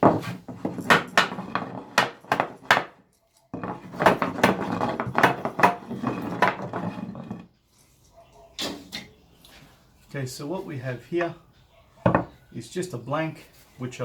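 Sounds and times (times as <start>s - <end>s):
wooden pieces knocking and clattering: 0.0s - 3.0s, 3.6s - 7.5s.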